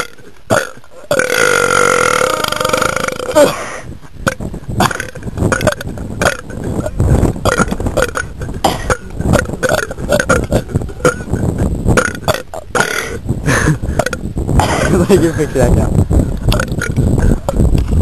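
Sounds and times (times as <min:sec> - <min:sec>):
person belching: 0:00.0 - 0:15.0, 0:16.5 - 0:17.6.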